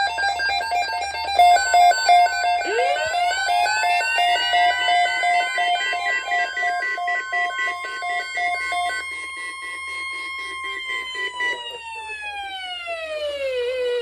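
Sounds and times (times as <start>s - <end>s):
pulsing alert beeps: 1.5s - 11.7s.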